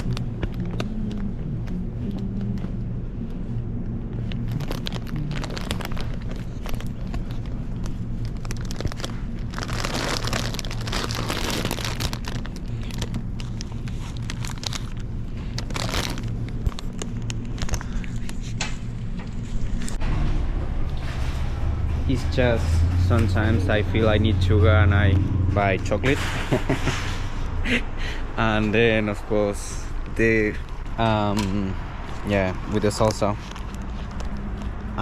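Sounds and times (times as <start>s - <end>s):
steady low hum: 0.0s - 35.0s
plastic packaging crinkling: 4.2s - 18.6s, 32.7s - 34.8s.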